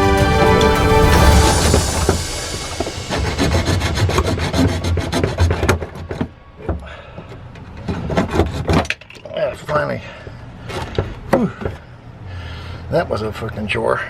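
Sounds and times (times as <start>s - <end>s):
saw cutting plastic pipe: 0.0s - 8.9s.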